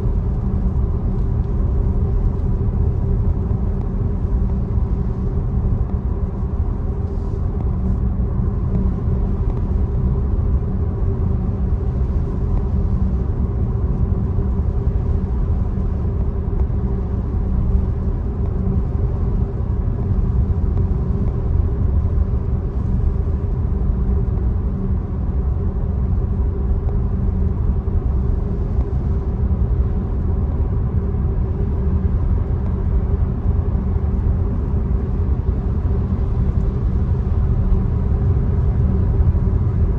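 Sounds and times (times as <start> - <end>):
faint hum: 0.0 - 39.9.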